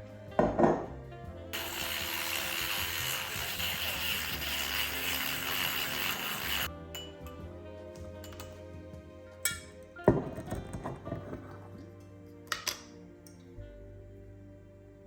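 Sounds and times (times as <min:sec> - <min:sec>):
background music: 0:00.0 - 0:15.0
frother whirring and scraping: 0:01.6 - 0:06.7.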